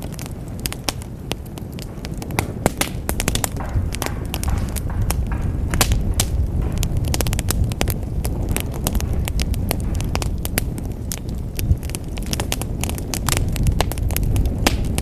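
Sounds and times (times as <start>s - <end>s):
fire crackling and popping: 0.0s - 15.0s
fire roaring: 0.0s - 15.0s.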